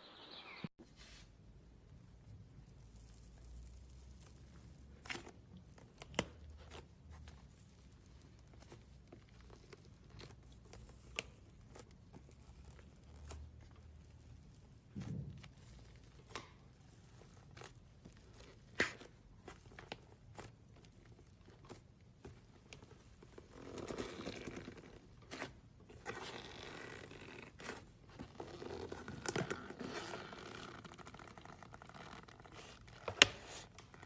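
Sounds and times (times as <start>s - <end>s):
slime crackling and tearing: 2.8s - 22.1s.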